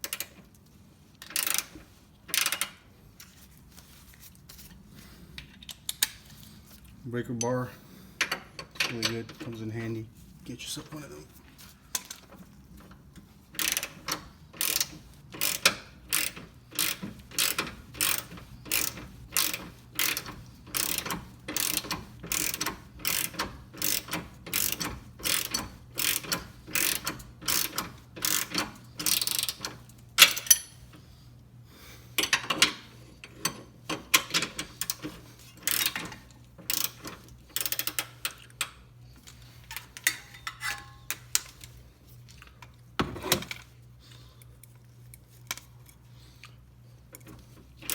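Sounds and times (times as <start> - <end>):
ratchet wrench clicking: 1.2 - 1.7, 2.3 - 2.8, 13.6 - 30.7, 33.4 - 41.7, 47.2 - 47.9.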